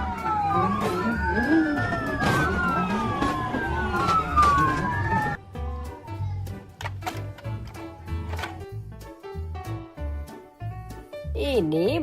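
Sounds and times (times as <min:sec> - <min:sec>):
police siren wailing: 0:00.0 - 0:06.2.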